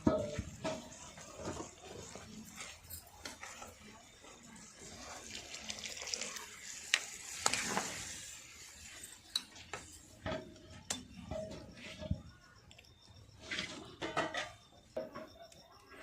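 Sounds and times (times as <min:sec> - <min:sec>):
water pouring and splashing: 0:00.0 - 0:10.4.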